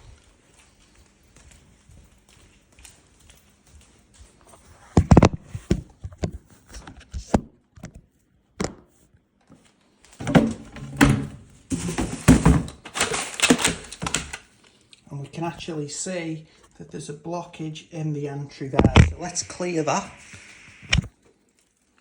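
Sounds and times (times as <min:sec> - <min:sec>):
plastic vacuum parts clicking: 0:10.2 - 0:14.5.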